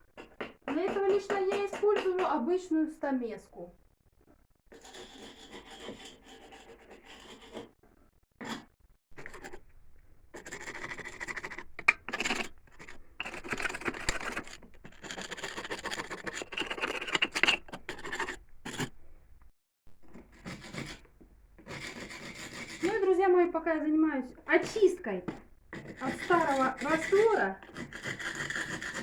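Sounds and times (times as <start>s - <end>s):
chisel scraping mortar off bricks: 0.0s - 2.5s, 4.7s - 7.8s, 8.4s - 19.1s, 20.0s - 23.2s, 24.5s - 29.0s.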